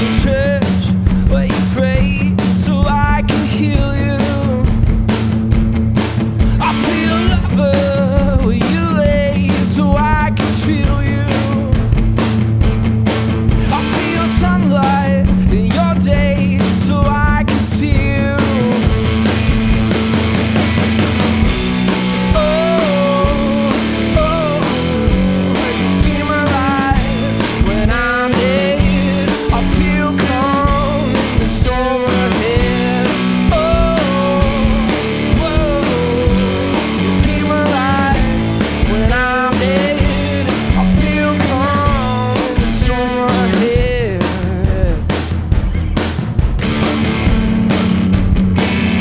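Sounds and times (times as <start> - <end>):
drum kit: 0.0 - 49.0
guitar: 0.0 - 49.0
person singing: 6.5 - 11.9, 13.6 - 19.1, 21.9 - 45.2.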